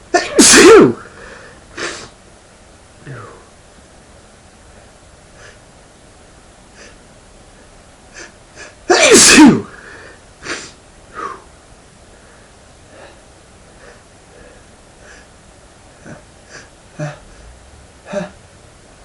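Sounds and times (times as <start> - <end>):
man sneezing: 0.1 - 1.2, 8.2 - 9.8, 18.1 - 18.4.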